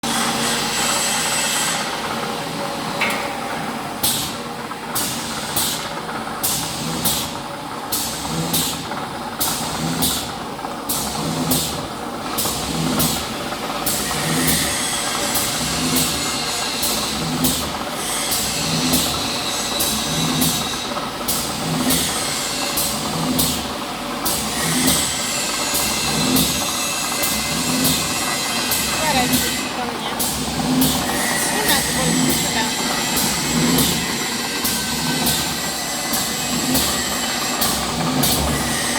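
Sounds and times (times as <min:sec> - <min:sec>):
grinding machine motor hum: 0:12.6 - 0:38.9.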